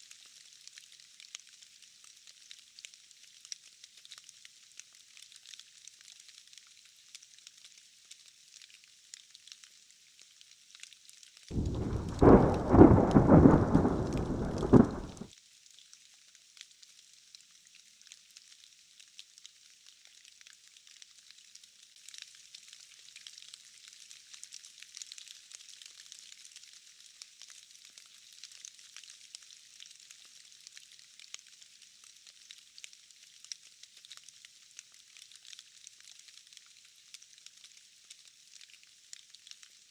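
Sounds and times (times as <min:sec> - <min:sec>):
rain hiss: 0:11.5 - 0:15.3
thunder rumbling: 0:11.5 - 0:15.3.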